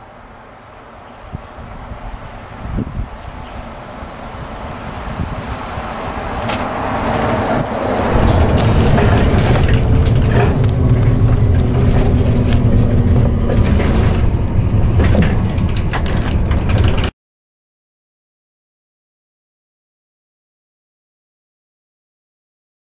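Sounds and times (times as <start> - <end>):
train passing: 0.0 - 17.1
wheels clicking and knocking: 8.1 - 17.1.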